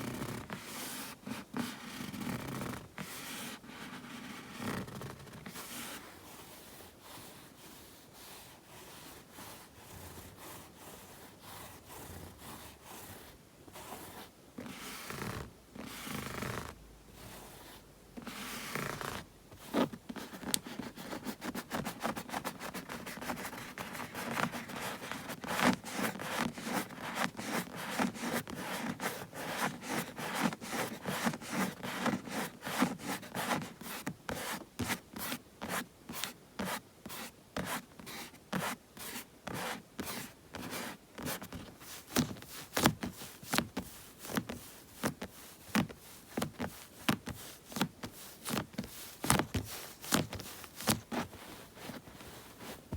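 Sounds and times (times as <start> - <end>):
palms rubbing together: 18.3 - 52.9.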